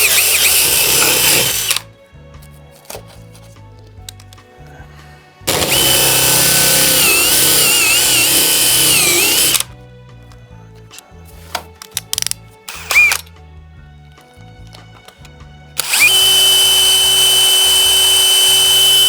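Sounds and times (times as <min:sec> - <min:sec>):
power drill whining under load: 0:00.0 - 0:01.8, 0:05.5 - 0:09.7, 0:12.7 - 0:13.2, 0:15.8 - 0:19.0
background music: 0:00.0 - 0:19.0.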